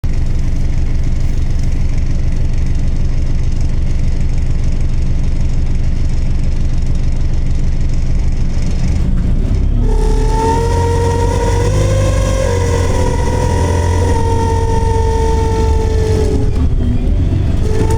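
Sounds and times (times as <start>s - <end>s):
bus engine rumbling: 0.0s - 17.9s
high multi-tone whine: 9.8s - 17.9s.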